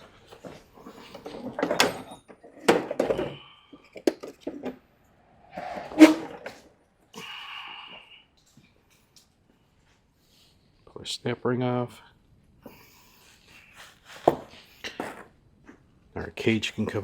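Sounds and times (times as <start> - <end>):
metal scraping: 4.9 - 6.8.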